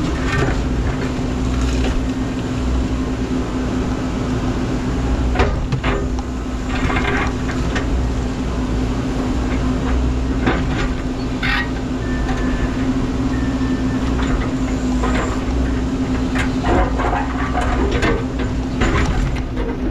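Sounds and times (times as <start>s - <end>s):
knocks and clanks of machinery: 0.0s - 2.2s, 5.2s - 8.1s, 9.4s - 19.9s
excavator engine running: 0.0s - 19.9s.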